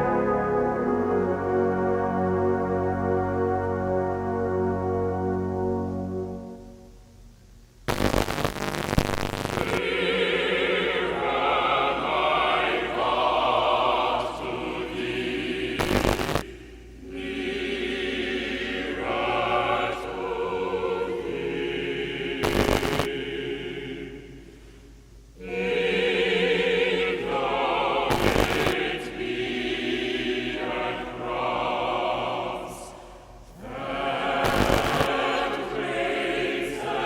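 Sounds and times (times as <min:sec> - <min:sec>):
choir singing held notes: 0:00.0 - 0:06.8, 0:09.7 - 0:24.7, 0:25.4 - 0:37.0.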